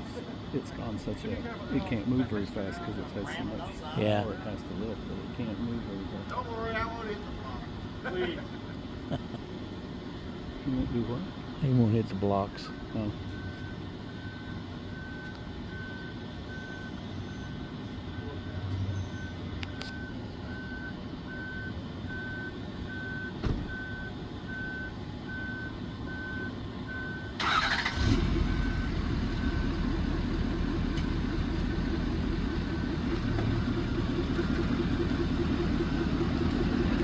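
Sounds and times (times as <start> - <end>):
engine starting and rumbling: 27.4 - 37.0.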